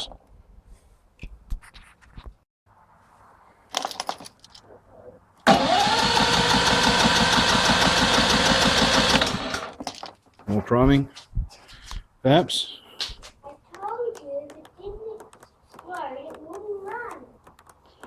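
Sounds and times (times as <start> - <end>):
small generator engine running: 5.5 - 9.8.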